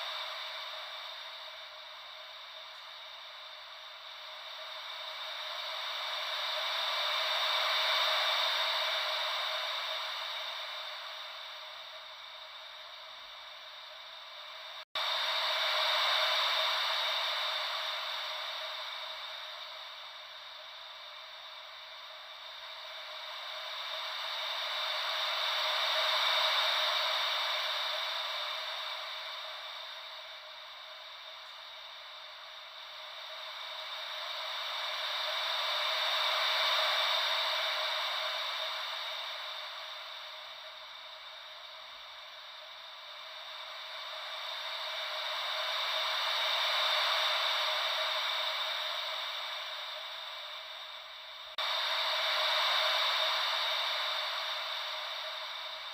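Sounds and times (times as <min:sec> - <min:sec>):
white noise like ocean waves: 0:00.0 - 0:55.9.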